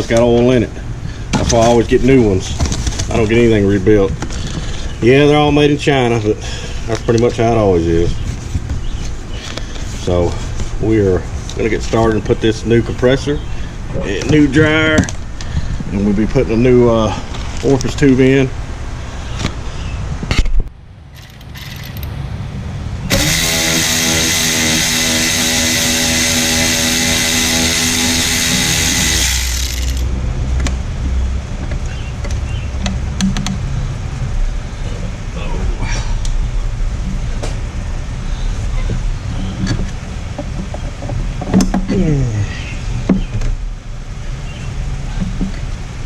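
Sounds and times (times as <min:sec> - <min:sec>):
low mechanical rumble: 0:20.6 - 0:46.0
machine humming and hissing: 0:23.1 - 0:30.1.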